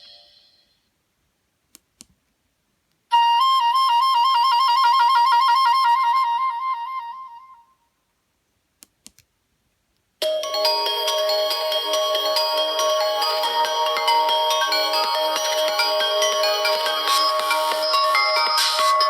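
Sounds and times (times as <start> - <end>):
different ringtone: 0.0 - 0.8, 10.2 - 19.0
electronic trill ringtone: 10.2 - 19.0.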